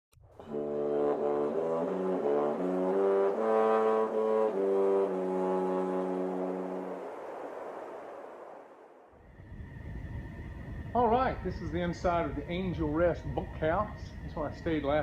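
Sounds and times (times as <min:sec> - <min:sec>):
brass fanfare: 0:00.4 - 0:07.1.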